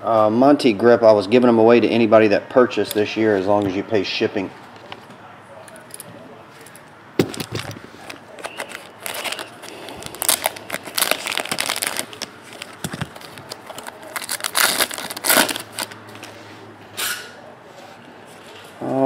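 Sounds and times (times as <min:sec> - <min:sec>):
card pack wrappers crinkling: 0:07.2 - 0:16.4.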